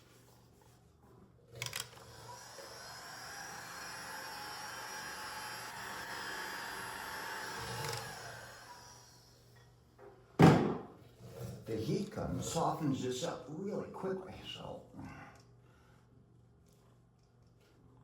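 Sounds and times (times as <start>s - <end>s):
heat gun fan whirring: 1.6s - 9.7s.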